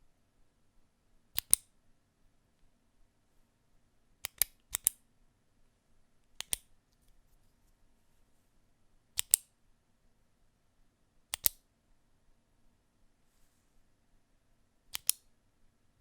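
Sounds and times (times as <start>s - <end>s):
retractable pen clicking: 1.4s - 1.6s, 4.3s - 5.0s, 6.4s - 6.7s, 9.2s - 9.5s, 11.4s - 11.6s, 14.9s - 15.2s.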